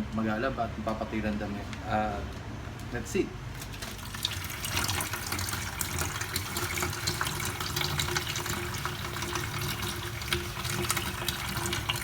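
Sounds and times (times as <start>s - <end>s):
water running from a tap: 3.7s - 12.0s.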